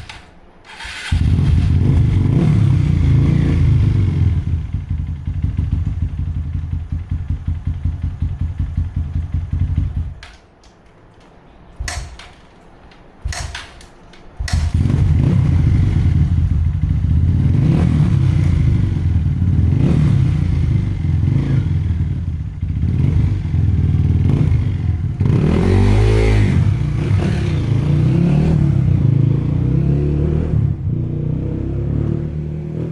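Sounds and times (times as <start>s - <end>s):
dirt bike engine running: 1.1s - 10.2s, 14.4s - 27.9s.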